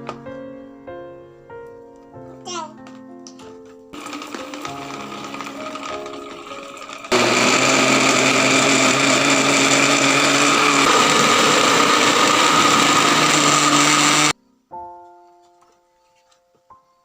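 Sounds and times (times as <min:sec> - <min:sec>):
electric blender motor running: 0:04.0 - 0:14.4.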